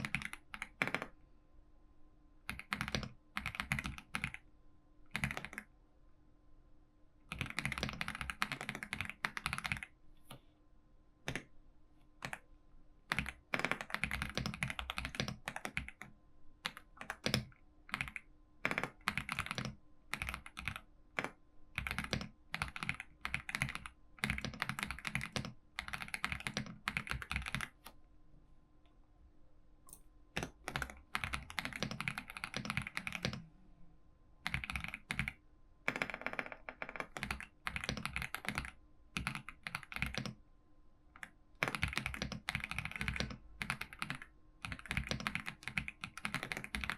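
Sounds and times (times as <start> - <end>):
keyboard typing: 0.0 - 1.2, 2.5 - 4.4, 5.1 - 5.7, 7.3 - 9.9, 11.2 - 11.5, 12.2 - 12.5, 13.1 - 28.0, 29.9 - 33.5, 34.4 - 40.4, 41.2 - 46.9.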